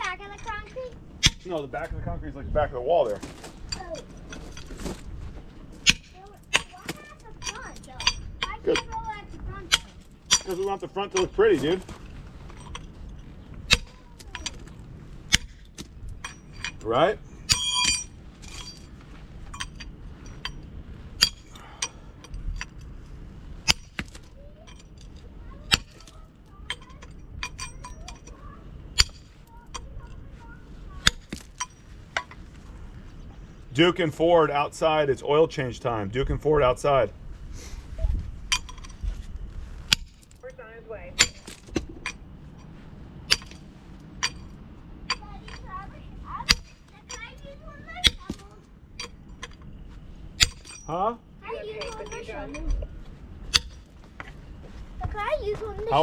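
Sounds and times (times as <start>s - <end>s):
hammer striking concrete block: 1.2s - 1.4s, 5.8s - 8.9s, 46.5s - 47.3s, 50.4s - 50.9s, 53.5s - 53.8s
concrete pieces knocking together: 29.0s - 29.9s, 31.0s - 32.4s, 39.8s - 40.3s, 41.2s - 42.2s, 46.4s - 47.3s, 50.4s - 51.0s, 53.5s - 53.9s.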